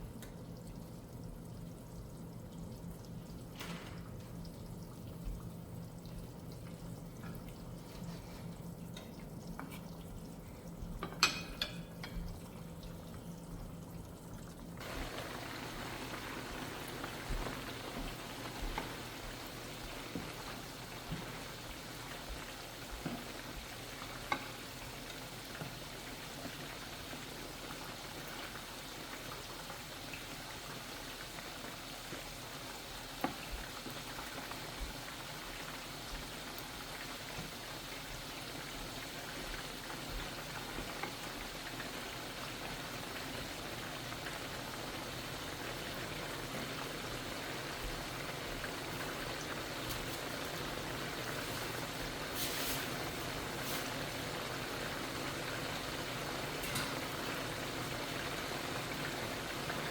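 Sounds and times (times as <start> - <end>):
chicken sizzling in hot oil: 14.7 - 59.9.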